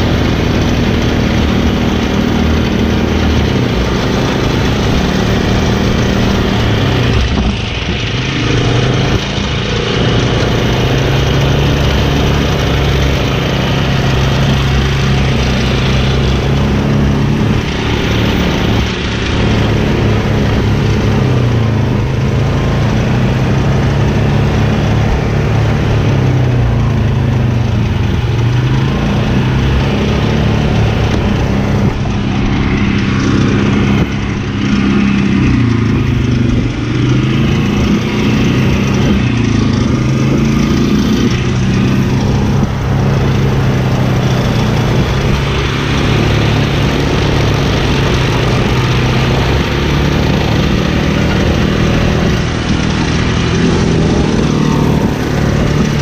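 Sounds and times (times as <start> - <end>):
brush mower engine running: 0.0 - 56.0.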